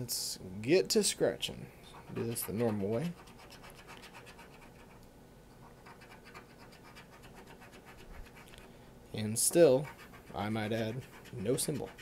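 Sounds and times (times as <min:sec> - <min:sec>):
scratch-off ticket scraping: 0:02.1 - 0:04.9, 0:09.7 - 0:12.0.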